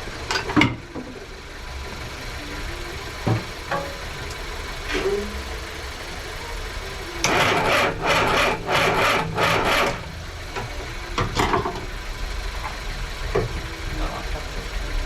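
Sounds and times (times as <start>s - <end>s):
low steady rumble: 0.0s - 15.0s.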